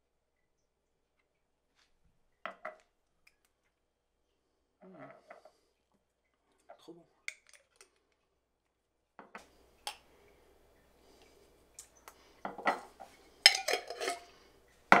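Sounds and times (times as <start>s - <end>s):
utensils clinking against glassware: 13.5s - 15.0s.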